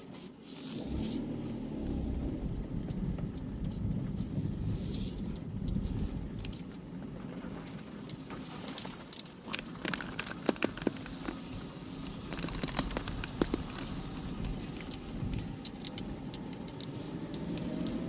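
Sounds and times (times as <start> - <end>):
car road and engine rumble: 0.0 - 18.0
sharp clicks and rattles: 5.2 - 18.0.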